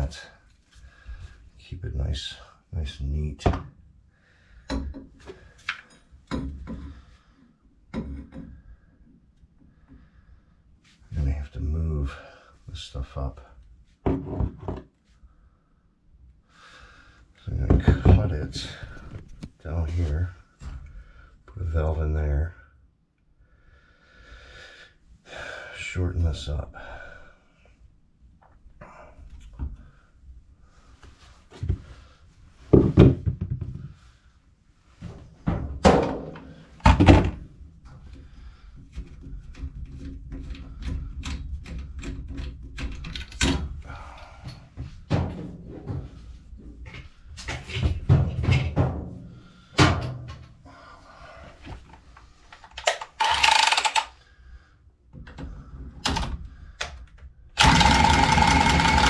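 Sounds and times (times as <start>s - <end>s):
tools and pipe knocking: 4.6s - 7.0s, 7.9s - 8.6s, 57.6s - 59.0s.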